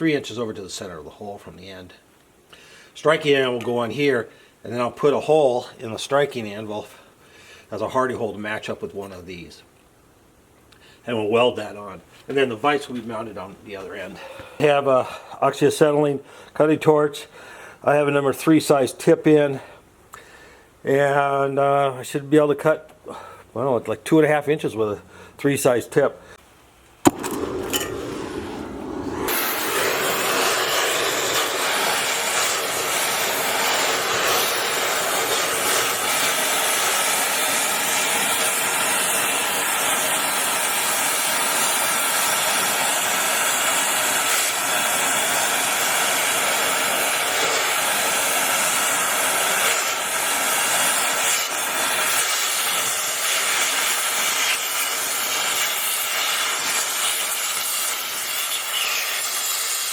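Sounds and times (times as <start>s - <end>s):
cutting torch hissing: 27.1s - 59.9s.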